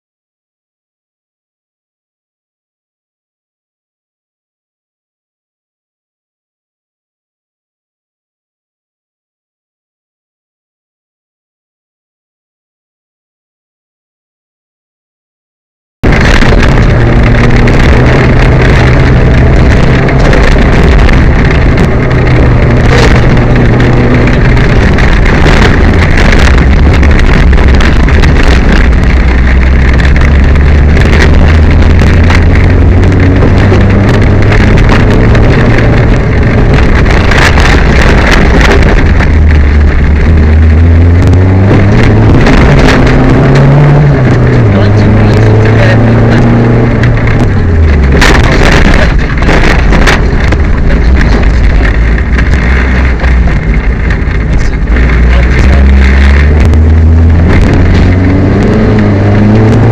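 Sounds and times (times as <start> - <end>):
knocks and rattles: 16.0 - 59.9
rally car engine running hard: 16.0 - 59.9.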